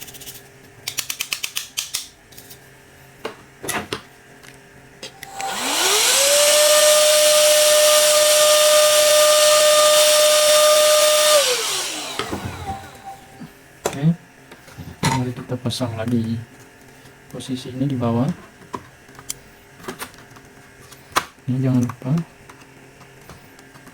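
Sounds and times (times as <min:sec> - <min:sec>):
small electric motor whining: 0:05.2 - 0:13.5.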